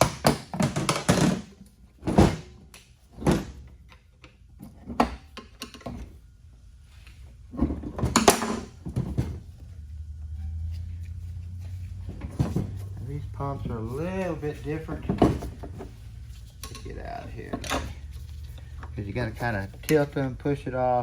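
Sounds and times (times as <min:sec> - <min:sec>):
heavy metal parts knocking: 0:11.7 - 0:20.5.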